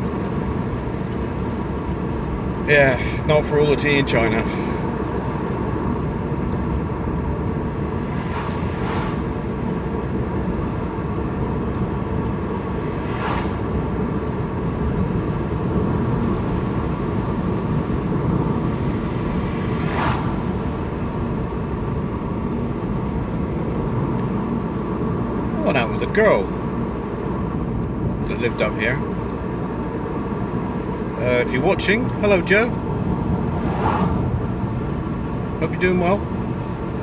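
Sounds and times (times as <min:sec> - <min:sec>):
car cabin road and engine noise: 0:00.0 - 0:37.0
short high hisses: 0:08.2 - 0:09.2.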